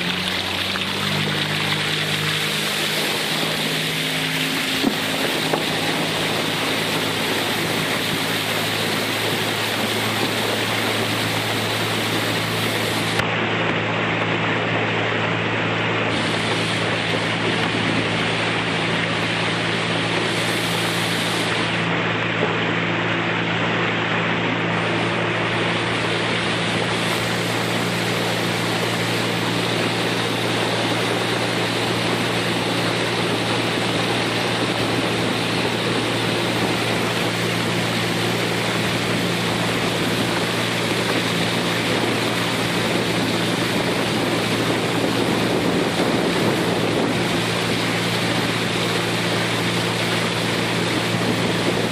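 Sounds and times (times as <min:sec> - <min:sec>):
boat motor running: 0:00.0 - 0:51.9
water rushing along hull: 0:00.0 - 0:51.9
wind on microphone: 0:00.0 - 0:51.9.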